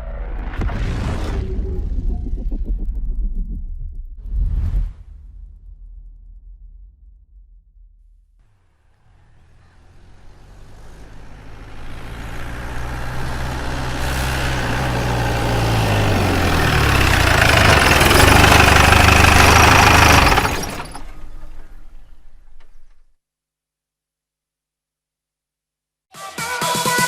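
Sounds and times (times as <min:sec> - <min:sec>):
bus engine approaching: 0:08.4 - 0:23.0
road noise: 0:08.4 - 0:23.0.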